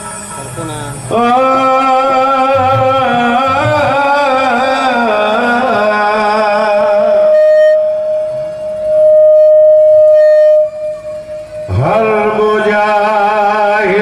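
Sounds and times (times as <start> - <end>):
steady held tone: 0.0 - 5.8, 6.5 - 14.0
man singing ornamented phrase: 0.4 - 7.0.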